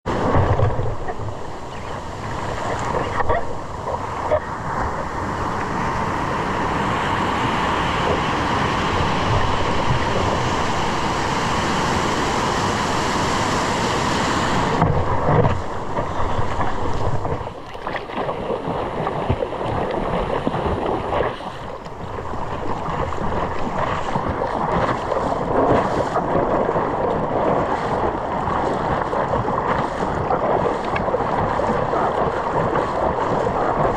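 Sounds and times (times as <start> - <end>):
wind buffeting microphone: 0.0 - 33.9
ocean surf: 0.1 - 33.9.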